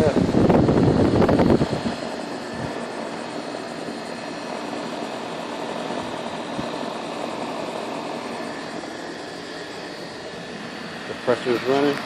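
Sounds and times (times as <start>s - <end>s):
air conditioner unit running: 0.0s - 12.0s.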